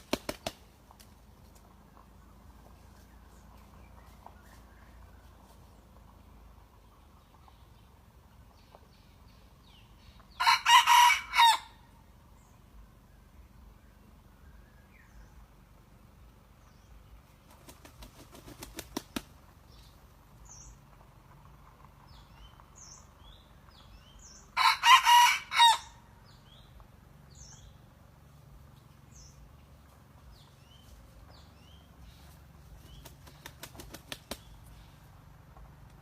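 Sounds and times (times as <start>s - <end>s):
rooster wings flapping: 0.0s - 1.2s, 17.4s - 19.4s, 32.7s - 34.7s
rooster crowing: 10.4s - 11.8s, 24.6s - 26.0s
small birds chirping: 28.8s - 35.3s.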